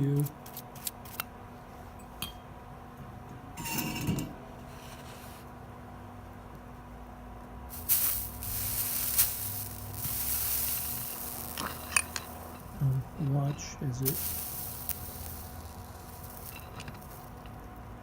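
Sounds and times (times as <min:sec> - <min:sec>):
flux sizzling under soldering iron: 0:07.7 - 0:18.0.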